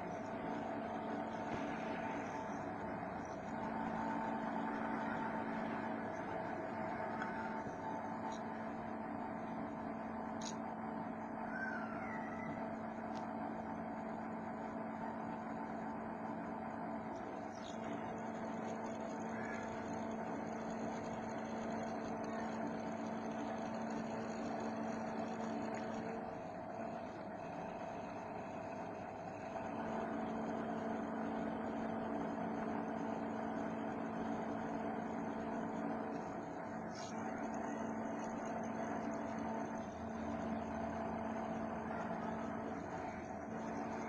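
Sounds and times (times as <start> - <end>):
cnc machine motors humming: 0.0 - 44.0.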